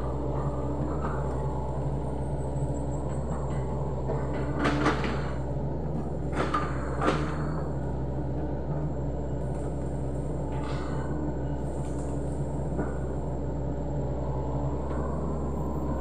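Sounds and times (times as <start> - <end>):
excavator diesel engine running: 0.0 - 16.0
sharp knocks and creaks: 2.6 - 7.7.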